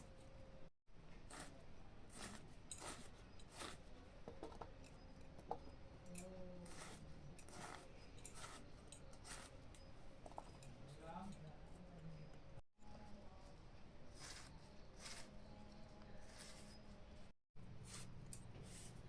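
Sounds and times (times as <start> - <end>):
knife cutting ingredients: 1.2 - 4.7, 5.5 - 9.5, 14.2 - 15.5.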